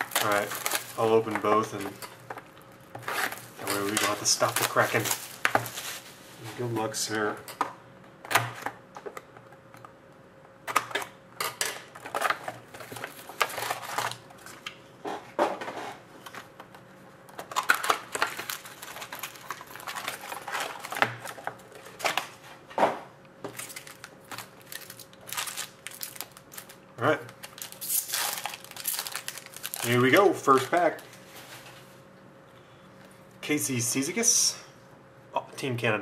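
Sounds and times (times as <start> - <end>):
cardboard and packs rustling: 0.0 - 2.0, 2.8 - 6.8, 12.0 - 14.6, 17.4 - 22.4, 23.5 - 32.0
plastic wrap crinkling and tearing: 0.0 - 2.1, 2.8 - 6.4, 11.9 - 14.5, 17.4 - 22.4, 23.5 - 31.2.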